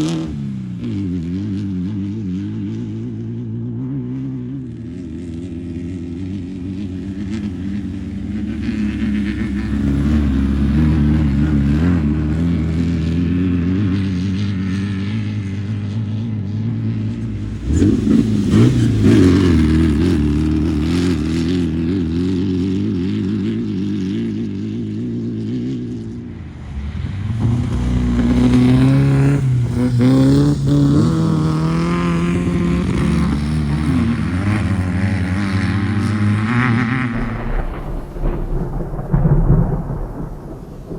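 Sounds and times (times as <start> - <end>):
race car engines revving: 0.0 - 38.8.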